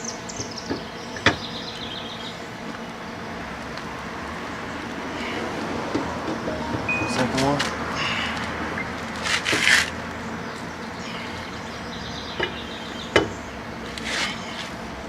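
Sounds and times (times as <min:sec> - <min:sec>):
lug wrench scraping rasp: 0:13.9 - 0:14.7.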